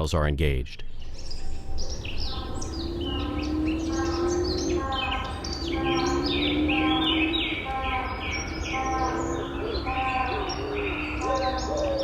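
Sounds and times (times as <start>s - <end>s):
steady low rumble: 0.5s - 12.0s
slowly rising low tone: 0.7s - 12.0s
birds chirping and singing: 0.8s - 12.0s.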